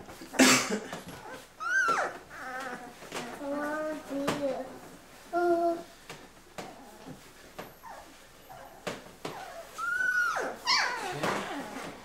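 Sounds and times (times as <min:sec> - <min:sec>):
puppies whimpering: 0:01.1 - 0:03.0, 0:06.6 - 0:11.9
puppy high squeal: 0:01.6 - 0:02.6, 0:07.8 - 0:11.2.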